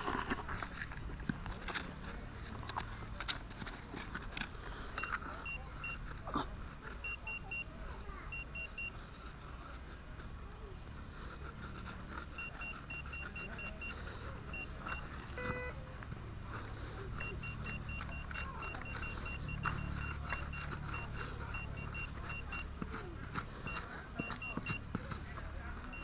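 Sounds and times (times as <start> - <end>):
metal detector beeping: 4.9 - 6.2, 6.9 - 9.0, 11.8 - 15.8, 17.0 - 26.0
scuffing ticks: 17.1 - 26.0.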